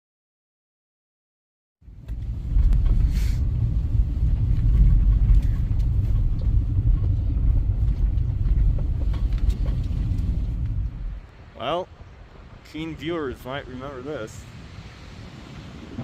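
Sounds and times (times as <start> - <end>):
vehicle driving low rumble: 1.8 - 11.4.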